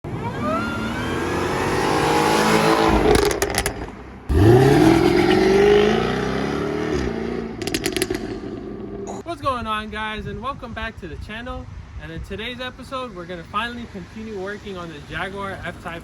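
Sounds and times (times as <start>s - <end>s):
car engine accelerating hard: 0.1s - 9.1s
exhaust crackles: 2.4s - 9.2s.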